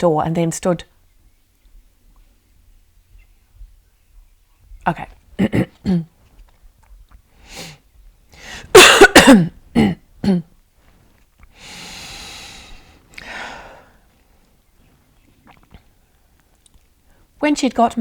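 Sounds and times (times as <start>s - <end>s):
person coughing harshly: 5.4s - 6.1s, 8.7s - 10.5s
long breaths: 7.3s - 8.7s, 11.5s - 14.3s.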